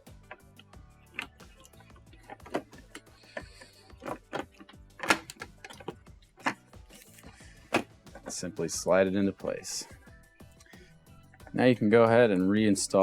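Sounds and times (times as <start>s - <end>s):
quiet background music: 0.0s - 13.0s
plastic parts clicking and knocking: 0.1s - 8.4s.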